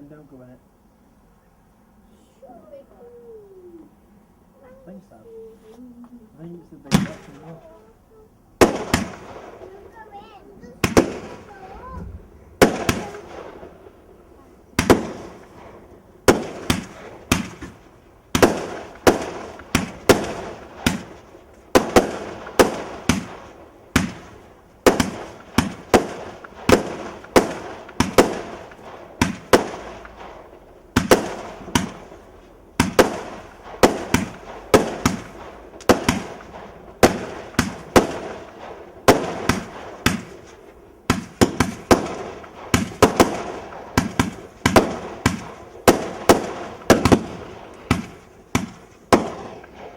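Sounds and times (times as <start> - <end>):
firework barrage bangs crackling: 6.4 - 49.9.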